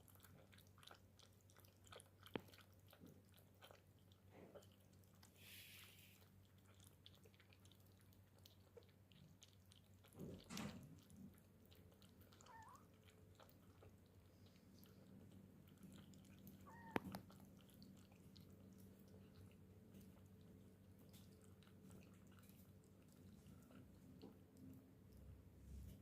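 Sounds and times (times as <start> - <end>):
cat meowing faintly: 12.4 - 12.9, 16.6 - 17.3.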